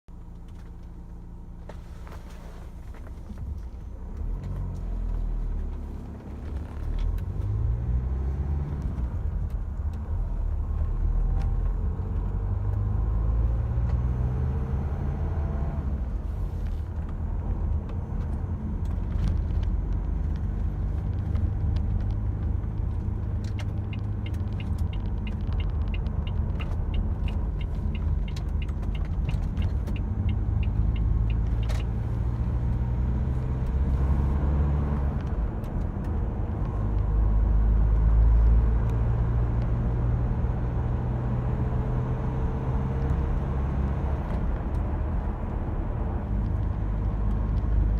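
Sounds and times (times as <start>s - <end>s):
car engine humming: 0.1s - 47.9s
regular ticking: 23.4s - 32.0s.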